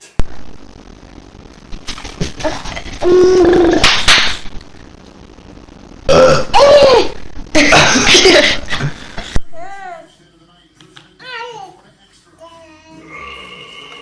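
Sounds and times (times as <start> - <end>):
person burping loudly: 2.4 - 3.9, 6.1 - 9.1.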